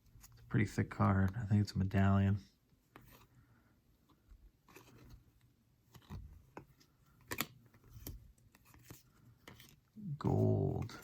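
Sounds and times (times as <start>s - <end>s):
trading cards clicking and rustling: 4.1s - 11.0s.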